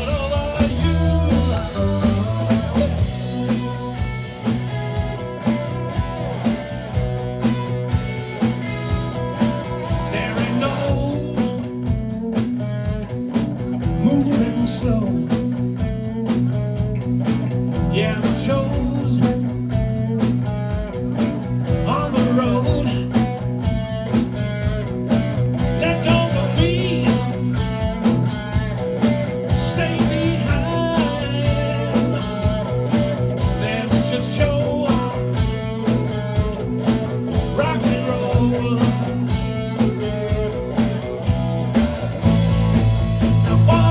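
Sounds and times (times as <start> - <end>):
rock band playing blues-rock: 0.0 - 43.9.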